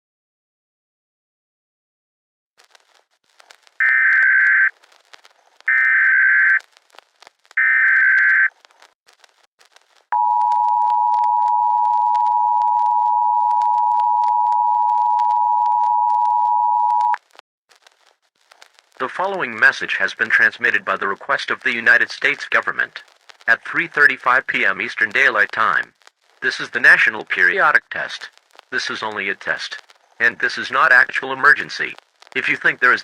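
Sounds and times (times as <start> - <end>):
faint static crackle: 2.6 - 33.0.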